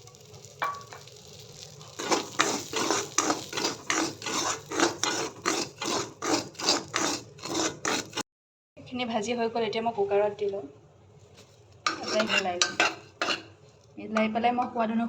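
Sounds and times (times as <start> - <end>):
spoon scraping metal pan: 2.0 - 8.2, 11.9 - 13.8.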